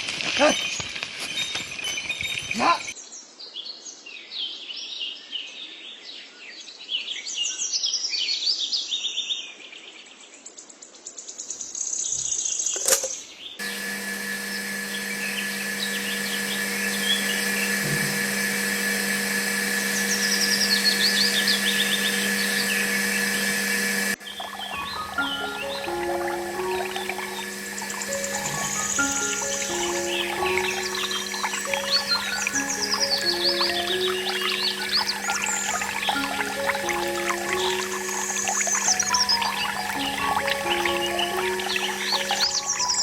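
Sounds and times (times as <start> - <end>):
birds chirping: 12.2 - 43.0
machine-like hum: 13.6 - 43.0.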